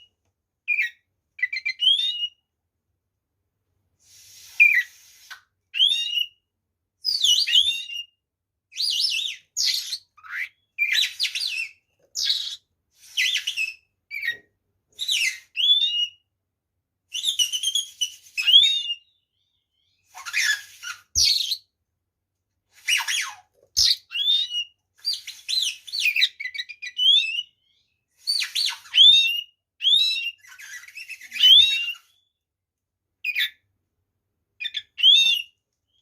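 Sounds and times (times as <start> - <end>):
bird singing whistled phrases: 0.7 - 2.4, 5.7 - 6.4, 15.0 - 16.2, 17.1 - 19.2, 22.9 - 32.3, 34.6 - 36.0.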